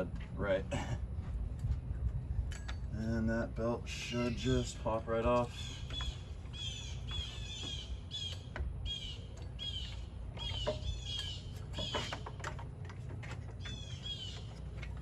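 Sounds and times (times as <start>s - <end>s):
low steady rumble: 0.0s - 15.0s
birds chirping: 4.0s - 15.0s
sharp clicks and knocks: 10.3s - 13.8s.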